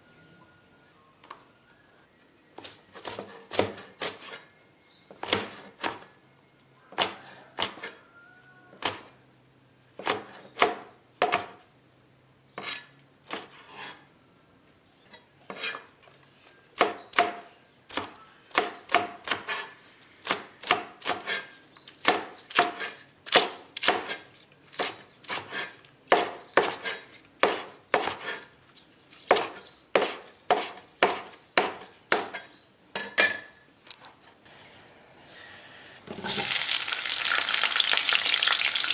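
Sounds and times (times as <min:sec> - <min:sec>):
knife chopping on cutting board: 0:16.8 - 0:28.4, 0:29.3 - 0:32.5.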